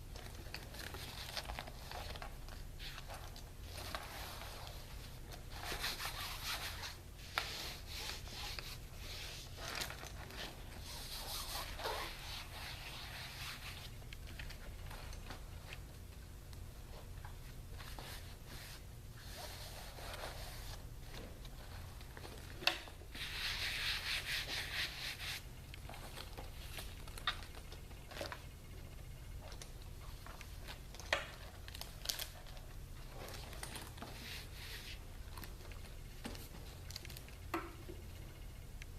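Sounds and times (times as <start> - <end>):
steady low hum: 0.0 - 38.9
cloth rubbing on laptop: 2.8 - 14.0, 17.8 - 20.8, 23.1 - 25.4, 34.0 - 35.1.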